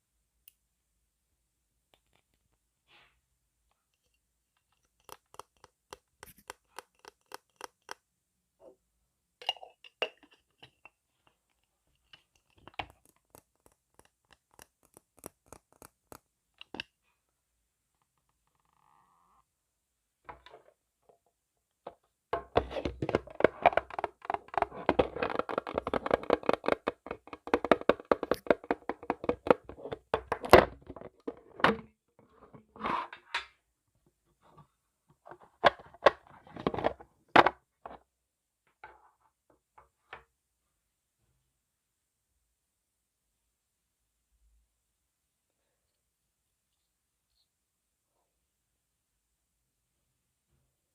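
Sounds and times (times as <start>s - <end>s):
fingers tapping on microphone: 23.2s - 30.5s.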